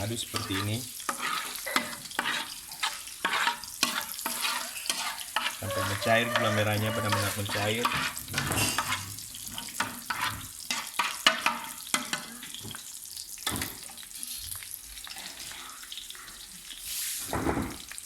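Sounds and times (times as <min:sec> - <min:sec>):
utensil scraping a wok: 0:00.0 - 0:12.6
soft sizzle: 0:00.0 - 0:18.0.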